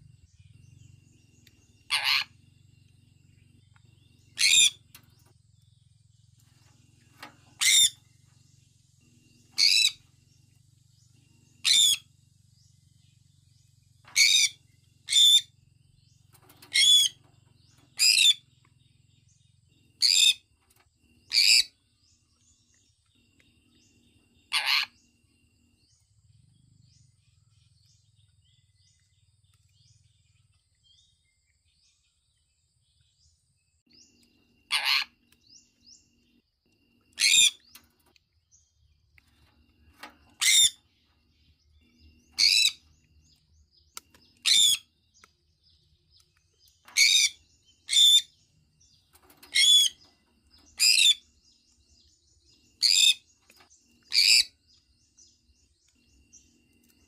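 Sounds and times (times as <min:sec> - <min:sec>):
parrot shrill calls: 0:01.9 - 0:02.3, 0:04.4 - 0:04.8, 0:07.6 - 0:08.0, 0:11.6 - 0:12.0, 0:24.5 - 0:25.0, 0:34.7 - 0:35.2, 0:37.2 - 0:37.6, 0:42.4 - 0:42.8, 0:44.4 - 0:44.8.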